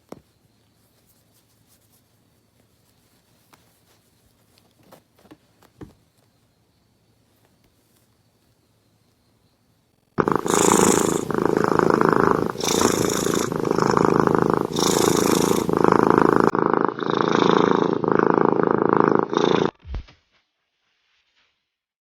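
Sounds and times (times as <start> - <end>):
cat purring loudly: 10.2 - 19.8.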